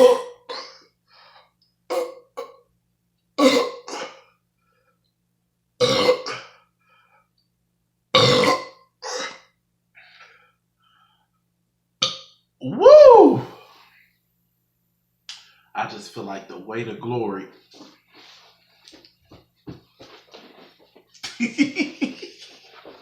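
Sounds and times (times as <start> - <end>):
man burping: 0.0 - 0.8, 1.9 - 2.6, 3.4 - 4.2, 5.8 - 6.5, 8.1 - 9.5.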